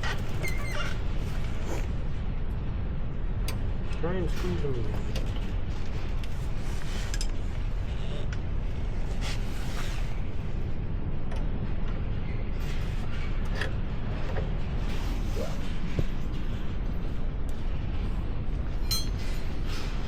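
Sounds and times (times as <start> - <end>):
low rumble: 0.9 - 20.0
metallic knocks and clinks: 18.8 - 19.3.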